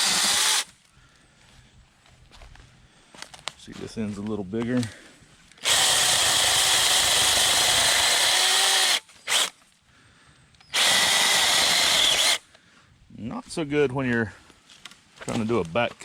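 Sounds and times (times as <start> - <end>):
electric chainsaw cutting tree: 0.0 - 0.7, 5.6 - 9.5, 10.7 - 12.4.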